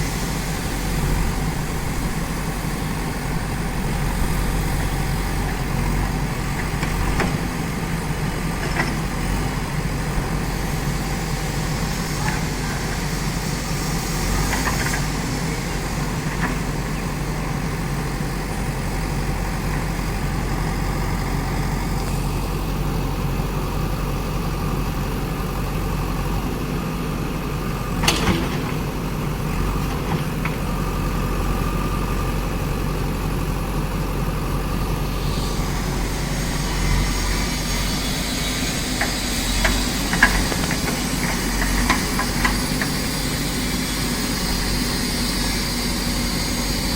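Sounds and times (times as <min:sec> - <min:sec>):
diesel engine running: 0:00.0 - 0:46.9
sharp knocks and clanks: 0:28.0 - 0:29.0.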